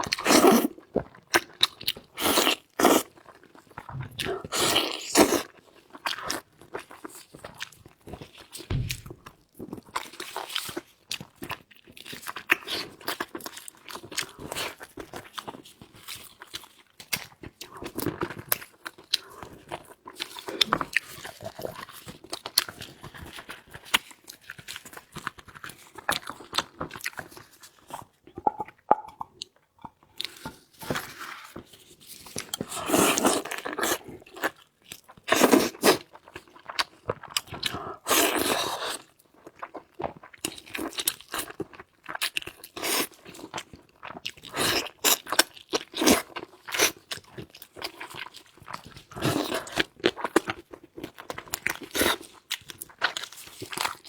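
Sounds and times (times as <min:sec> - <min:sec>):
person chewing crunchy food: 0:00.0 - 0:54.0.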